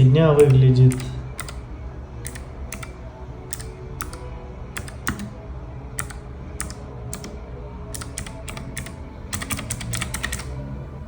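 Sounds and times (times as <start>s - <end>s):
low steady hum: 0.0s - 11.0s
mechanical keyboard clicks: 0.4s - 1.6s, 2.2s - 4.2s, 4.8s - 5.3s, 6.0s - 10.5s.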